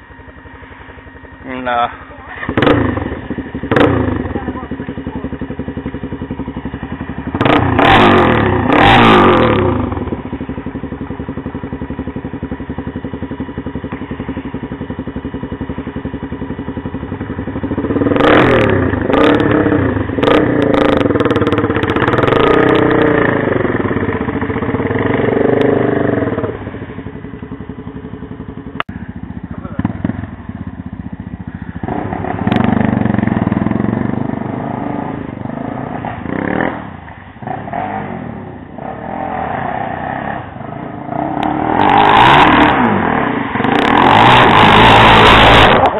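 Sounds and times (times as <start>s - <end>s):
atv engine idling and revving: 0.0s - 45.9s.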